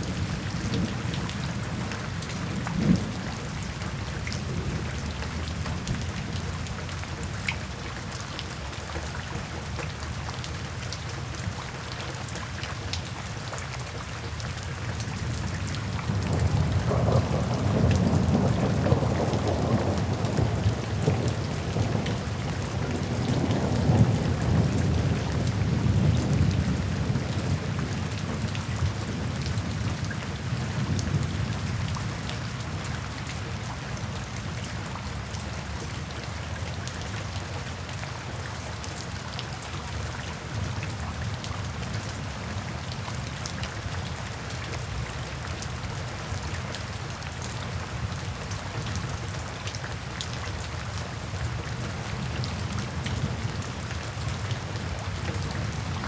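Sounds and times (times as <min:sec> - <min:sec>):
rain on a tin roof: 0:00.0 - 0:56.0
thunder rumble: 0:16.1 - 0:28.4.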